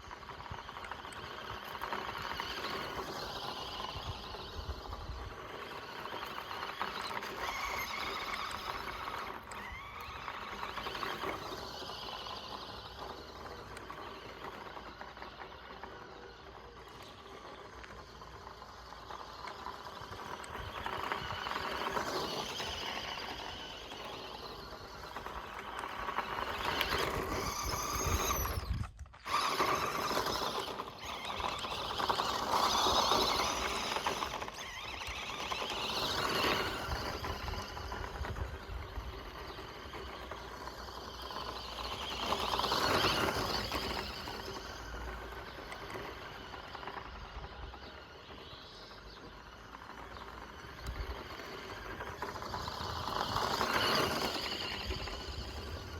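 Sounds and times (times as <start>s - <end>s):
rc car motor whining: 0.0s - 55.9s.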